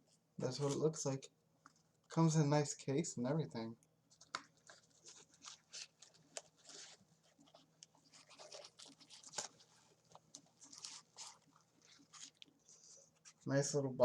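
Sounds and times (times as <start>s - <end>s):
cardboard packaging handling: 4.1s - 13.4s.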